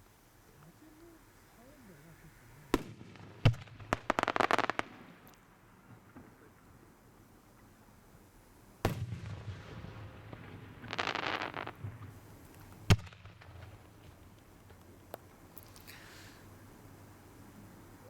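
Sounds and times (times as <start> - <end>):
dense firework crackling: 1.8 - 6.7, 8.8 - 14.8
firework shell bursting with rumble: 8.8 - 14.3.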